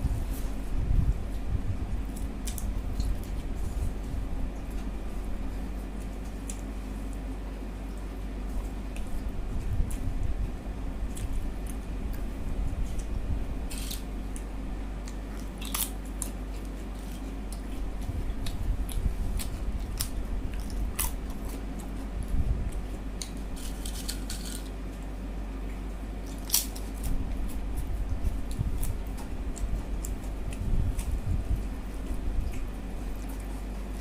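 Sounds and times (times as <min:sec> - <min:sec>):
steady low hum: 0:00.0 - 0:34.0
person chewing: 0:11.1 - 0:24.7.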